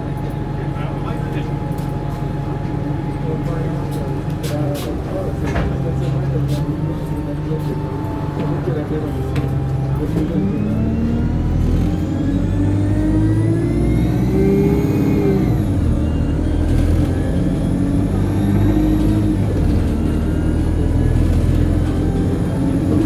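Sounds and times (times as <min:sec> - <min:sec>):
bus engine accelerating: 0:00.0 - 0:23.0
high turbo whine: 0:08.7 - 0:23.0.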